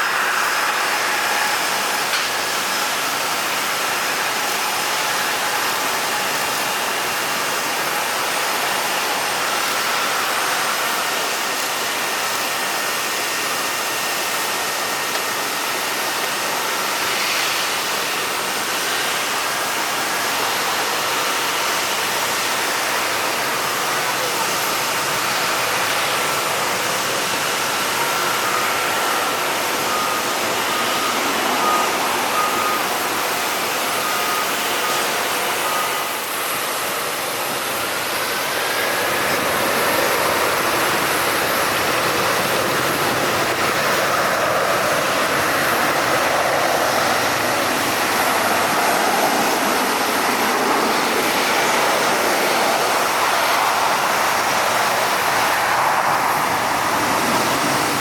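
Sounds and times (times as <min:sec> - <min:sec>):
jet aircraft noise: 0:00.0 - 0:58.0
vehicle reversing beep: 0:13.7 - 0:37.0.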